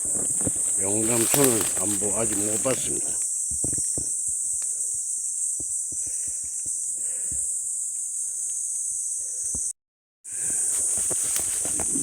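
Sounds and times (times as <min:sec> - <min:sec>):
footsteps through brush: 0:00.0 - 0:04.6, 0:10.4 - 0:12.0
insects chirping: 0:00.0 - 0:12.0.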